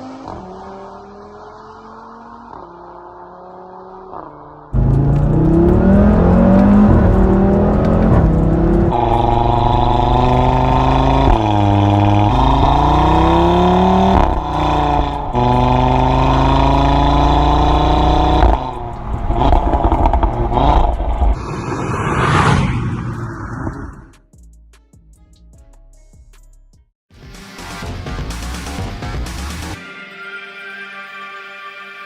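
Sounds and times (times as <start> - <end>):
car engine accelerating: 0.0 - 24.2
exhaust crackling: 4.8 - 24.1.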